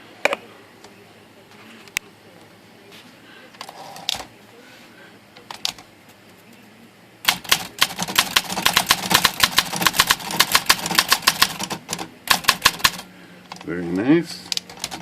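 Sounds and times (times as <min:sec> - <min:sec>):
manual typewriter typing: 0:07.3 - 0:13.7, 0:14.4 - 0:15.0.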